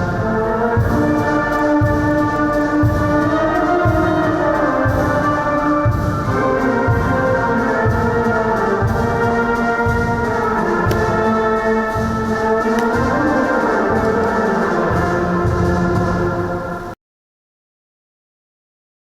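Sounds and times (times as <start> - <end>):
orchestral music with brass chords: 0.0 - 17.0
low beat: 5.8 - 16.1.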